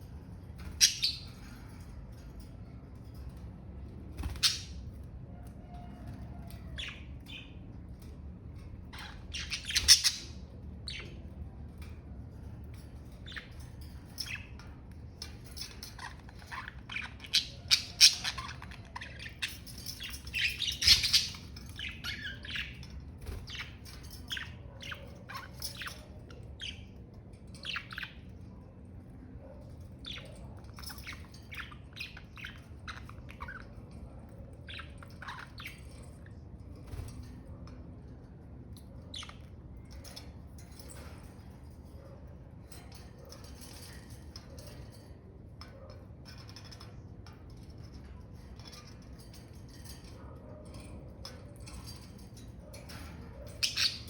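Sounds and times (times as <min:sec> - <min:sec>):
budgerigars chirping: 0:09.0 - 0:11.2, 0:15.7 - 0:22.8, 0:53.5 - 0:54.0.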